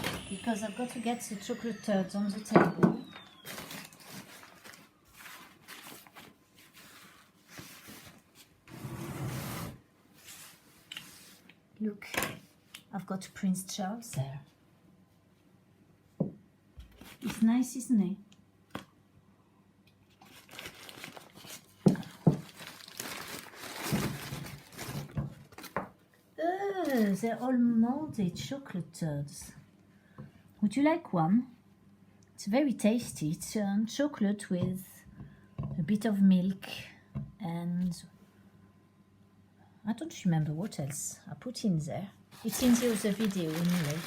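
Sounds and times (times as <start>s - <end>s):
crinkling and rustling: 2.3s - 8.7s, 16.8s - 17.6s, 20.0s - 26.0s, 42.3s - 44.0s
gloved hands rustling: 42.4s - 44.0s.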